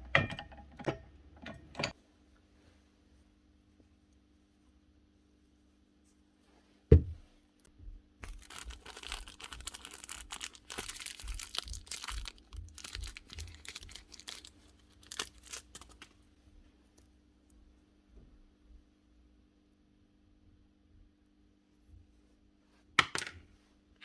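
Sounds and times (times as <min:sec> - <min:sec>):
faint steady hum: 0:00.0 - 0:24.0
material crinkling and rustling: 0:08.2 - 0:17.2.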